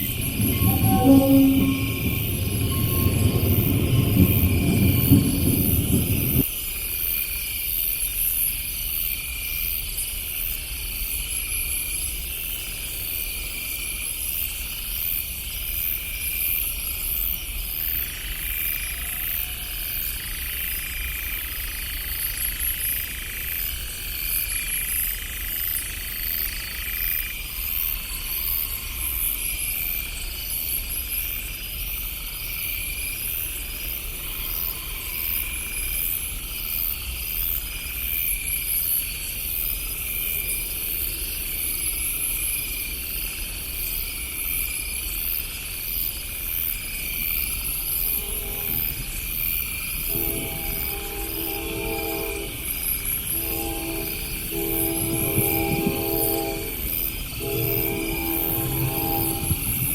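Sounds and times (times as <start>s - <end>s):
distant train horn: 0.0s - 6.4s, 47.9s - 59.9s
low rumble: 0.0s - 6.4s, 52.6s - 59.9s
crickets chirping: 0.0s - 59.9s.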